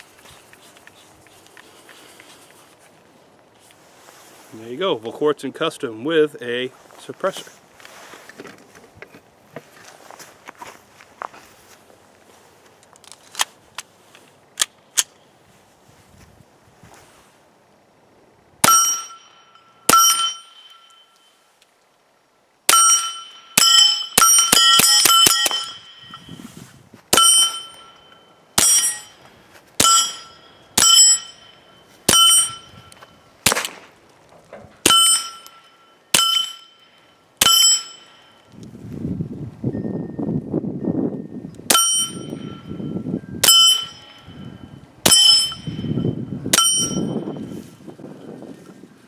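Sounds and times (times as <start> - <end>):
steel target ringing: 18.6 - 21.4, 22.7 - 26.5, 27.1 - 29.2, 29.8 - 33.6, 34.8 - 38.5, 41.7 - 47.6
suppressed pistol shots: 33.4 - 33.9.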